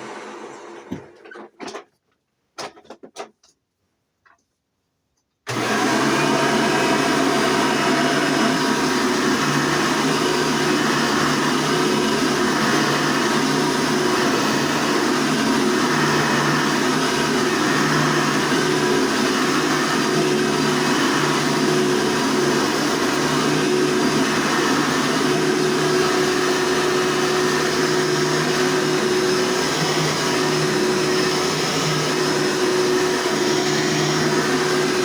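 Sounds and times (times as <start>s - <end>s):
vacuum cleaner running: 0.0s - 1.5s, 5.5s - 35.0s
clicks and knocks: 1.0s - 3.6s.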